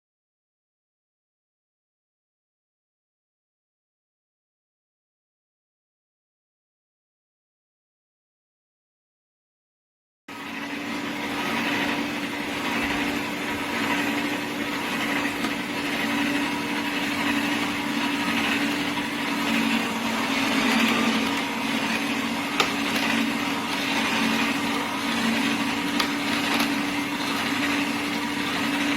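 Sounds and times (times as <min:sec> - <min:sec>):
juicer motor humming: 0:10.3 - 0:28.9.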